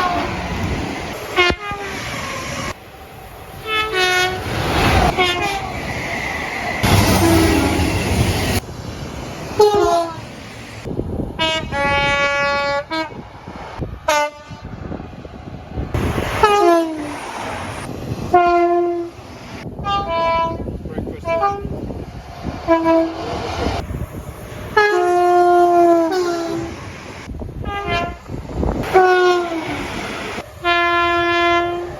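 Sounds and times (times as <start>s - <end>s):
locomotive horn blasts: 1.3s - 1.9s, 3.6s - 4.5s, 5.1s - 5.7s, 6.8s - 8.1s, 9.6s - 10.2s, 11.4s - 13.2s, 14.1s - 14.7s, 16.4s - 17.1s, 18.3s - 19.2s, 19.8s - 20.6s, 21.2s - 21.8s, 22.7s - 23.2s, 24.8s - 26.8s, 27.6s - 28.2s, 28.8s - 29.8s, 30.6s - 31.9s.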